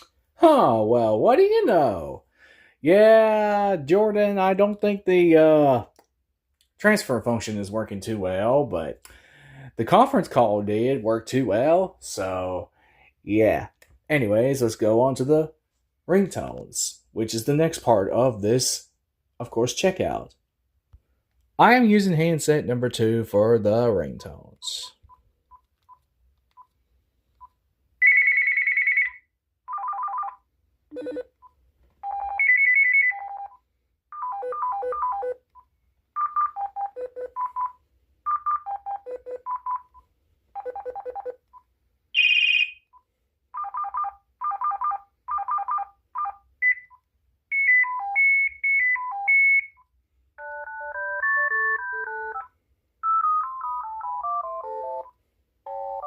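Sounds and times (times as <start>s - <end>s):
phone ringtones trilling and beeping: 28.0s - 30.4s, 32.0s - 35.4s, 42.2s - 42.9s, 43.6s - 49.8s, 50.4s - 55.1s
simple melodic ringtones: 53.0s - 55.1s.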